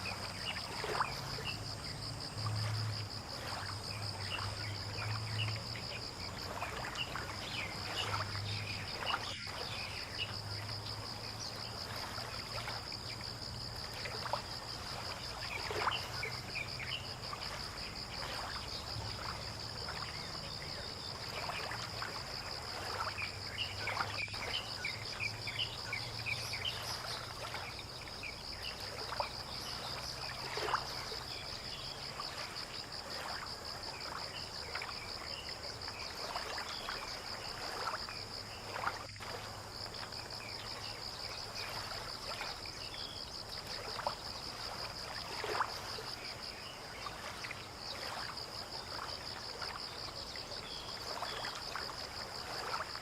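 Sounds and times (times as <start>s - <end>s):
high insect trill: 0.0s - 53.0s
soft water splashes: 0.0s - 53.0s.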